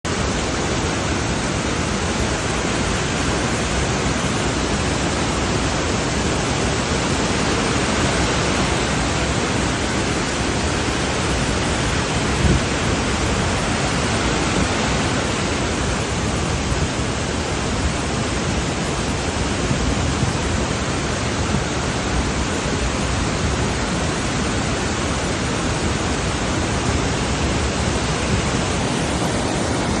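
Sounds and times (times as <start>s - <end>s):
waterfall rushing: 0.0s - 30.0s.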